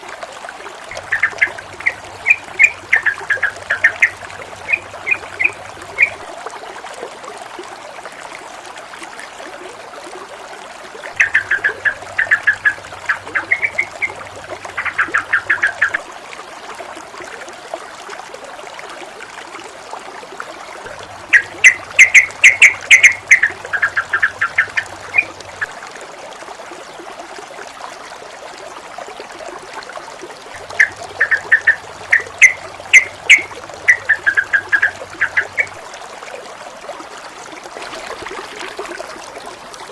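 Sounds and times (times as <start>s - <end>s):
water trickling: 0.0s - 39.9s
chattering bird calls: 0.9s - 6.2s, 11.1s - 16.0s, 21.3s - 25.7s, 30.8s - 35.7s.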